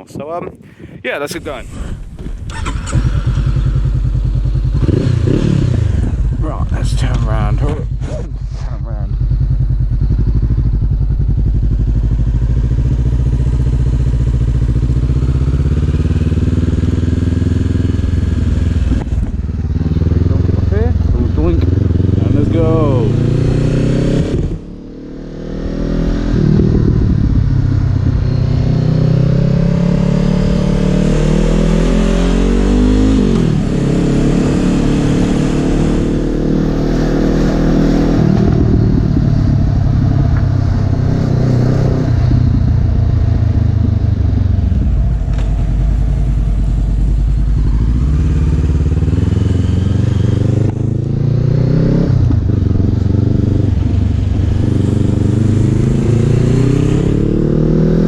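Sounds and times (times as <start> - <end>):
motorcycle engine accelerating: 1.4 - 58.0.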